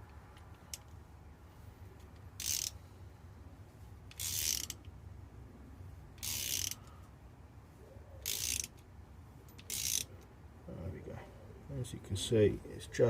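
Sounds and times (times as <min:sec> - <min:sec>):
socket ratchet clicking: 0:02.0 - 0:02.8, 0:04.1 - 0:04.9, 0:06.2 - 0:06.9, 0:08.2 - 0:08.8, 0:09.5 - 0:10.2.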